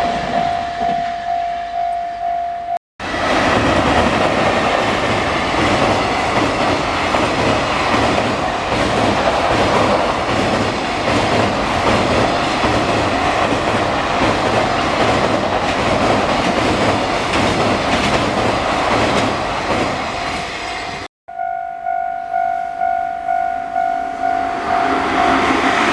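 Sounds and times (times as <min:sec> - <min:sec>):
train rumbling past: 0:00.0 - 0:02.4, 0:03.0 - 0:21.1, 0:21.9 - 0:25.9
level crossing alarm dinging: 0:00.0 - 0:02.8, 0:21.3 - 0:25.6.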